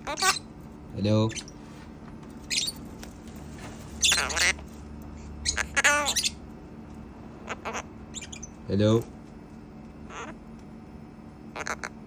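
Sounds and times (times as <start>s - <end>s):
parrot calling: 0.0s - 0.5s, 2.4s - 2.9s, 3.9s - 6.5s, 7.4s - 8.7s, 10.0s - 10.4s, 11.5s - 12.0s.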